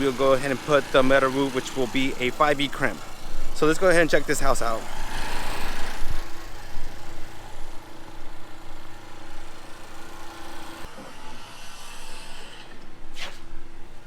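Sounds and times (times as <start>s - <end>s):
outdoor background noise: 0.0s - 14.0s
steady mechanical hum: 0.0s - 14.0s.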